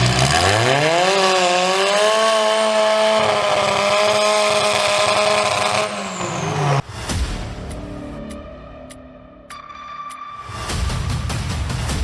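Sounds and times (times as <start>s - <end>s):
chainsaw engine revving: 0.0s - 6.8s.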